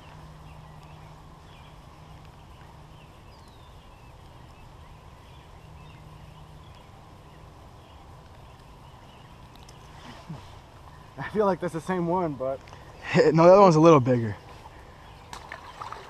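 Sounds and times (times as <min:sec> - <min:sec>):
faint bird chirps: 0:00.0 - 0:11.8
steady low hum: 0:00.0 - 0:16.0.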